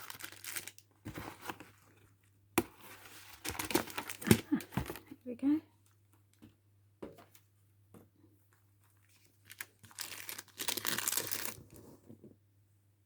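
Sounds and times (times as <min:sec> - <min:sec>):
packaging crinkling and tearing: 0:00.0 - 0:01.6, 0:03.3 - 0:05.0, 0:09.2 - 0:11.8.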